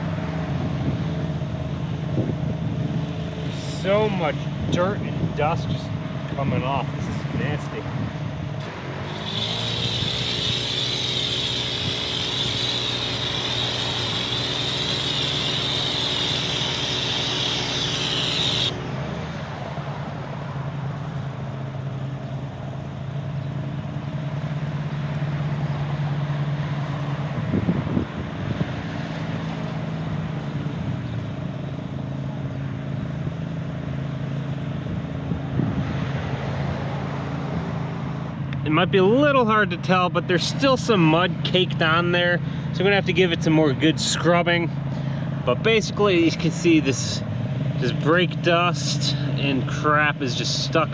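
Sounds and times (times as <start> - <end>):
pressure washer spraying: 8.9 - 18.8.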